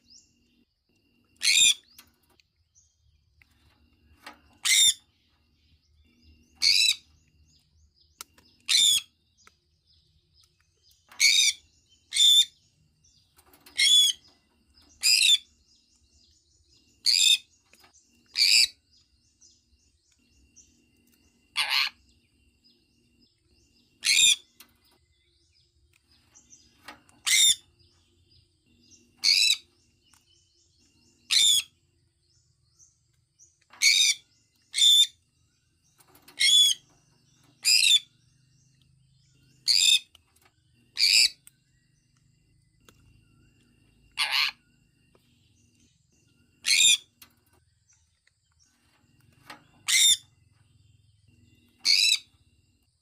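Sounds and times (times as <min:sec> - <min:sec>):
parrot giving shrill calls: 0:21.6 - 0:22.0, 0:44.2 - 0:44.6.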